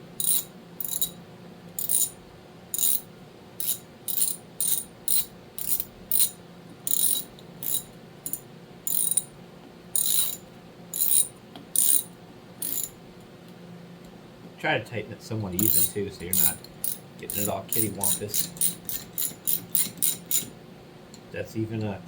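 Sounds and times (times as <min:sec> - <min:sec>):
ratchet driver clicking: 0:02.8 - 0:03.0, 0:06.9 - 0:09.3, 0:11.0 - 0:12.9, 0:15.6 - 0:20.5.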